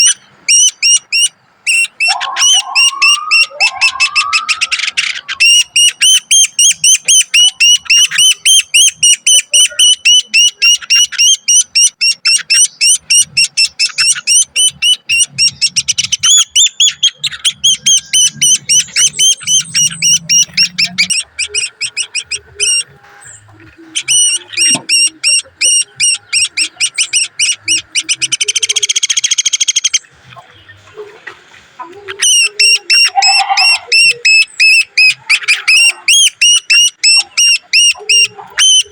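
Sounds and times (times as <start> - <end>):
woodpecker nestlings begging: 0.0 - 30.8, 32.0 - 38.9.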